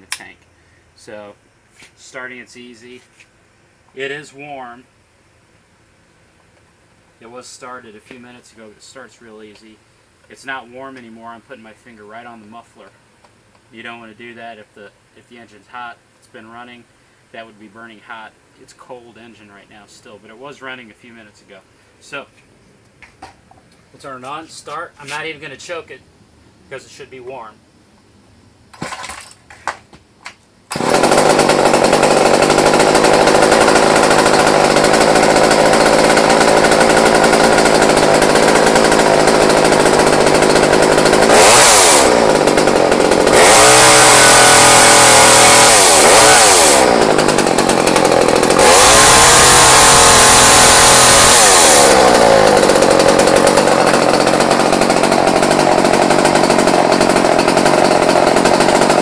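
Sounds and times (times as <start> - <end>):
chainsaw engine idling and revving: 30.7 - 59.0.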